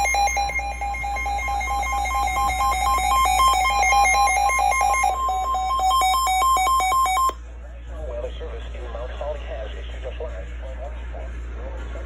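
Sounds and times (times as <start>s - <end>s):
warbling electronic alert beeps: 0.0s - 7.4s.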